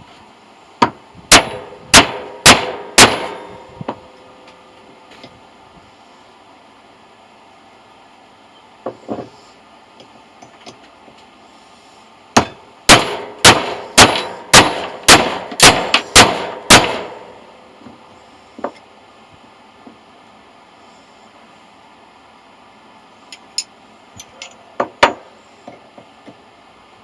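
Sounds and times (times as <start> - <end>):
hammer striking metal: 0.8 - 4.0, 12.4 - 17.4.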